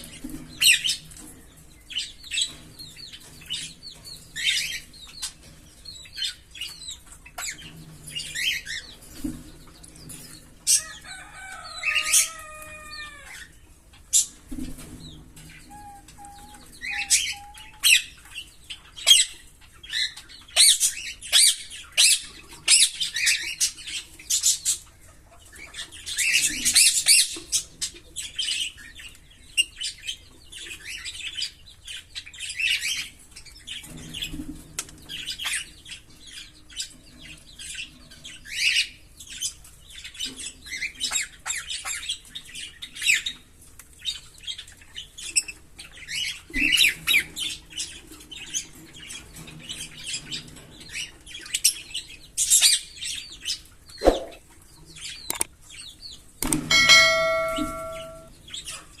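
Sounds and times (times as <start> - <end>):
lovebirds chirping and squawking: 0.0 - 59.0.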